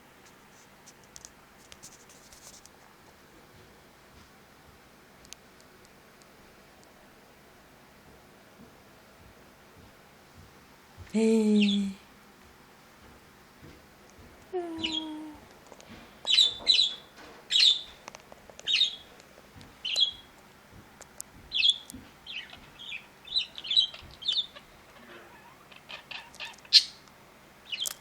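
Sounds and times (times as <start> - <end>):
budgerigars chirping: 16.3 - 17.9, 18.7 - 19.1, 19.8 - 20.3, 21.5 - 27.0.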